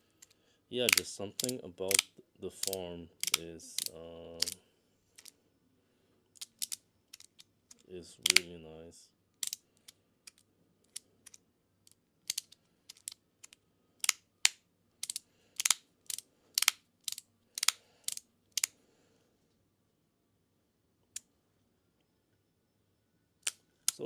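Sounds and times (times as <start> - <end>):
magnetic pieces clicking: 0.1 - 4.6, 6.4 - 8.5, 9.4 - 18.8, 23.4 - 24.0.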